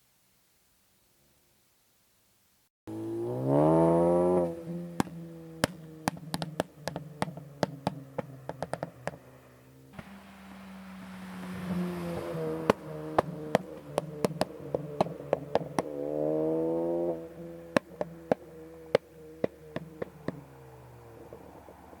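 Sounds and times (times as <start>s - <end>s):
car engine running: 2.9s - 22.0s
exhaust pops and crackles: 4.4s - 10.3s, 12.1s - 16.1s, 17.6s - 22.0s.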